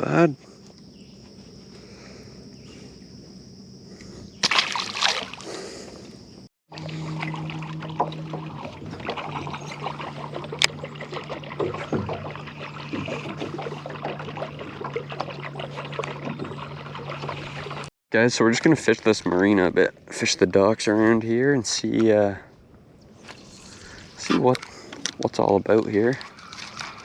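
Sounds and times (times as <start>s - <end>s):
boat motor humming: 0.0s - 17.9s
water slapping against hull: 4.4s - 5.5s, 6.7s - 17.9s, 25.4s - 27.0s
splashing: 4.4s - 5.7s, 6.7s - 17.9s, 25.4s - 27.0s.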